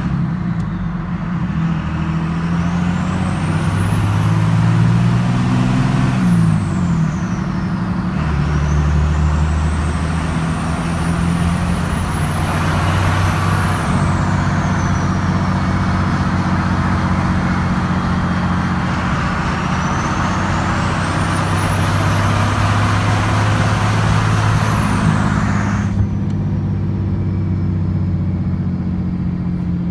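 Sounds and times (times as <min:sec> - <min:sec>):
diesel engine running: 0:00.0 - 0:29.9
high turbo whistle: 0:08.6 - 0:26.3.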